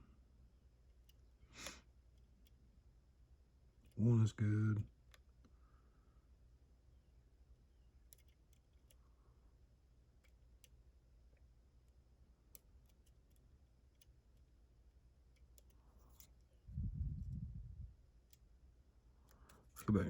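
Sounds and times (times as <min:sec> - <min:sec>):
low steady hum: 0:00.0 - 0:20.0
lock pick clicking: 0:08.1 - 0:09.0.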